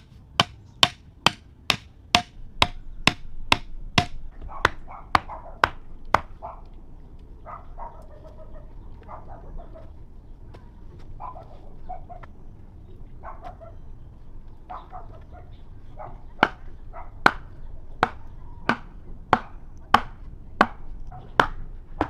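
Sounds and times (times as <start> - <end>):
blade chopping on wooden block: 0.0 - 6.3, 17.2 - 20.8
soft animal calls: 6.3 - 18.8.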